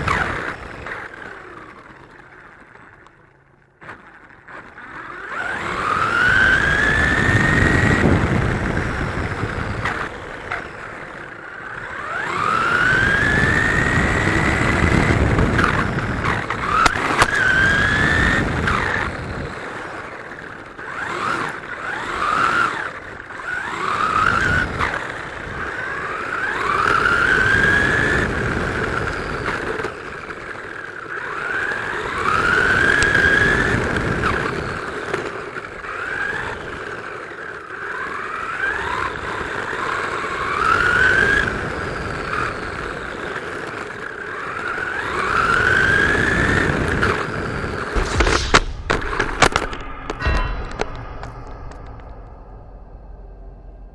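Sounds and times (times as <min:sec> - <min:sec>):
electric motor whining: 0:03.8 - 0:30.0.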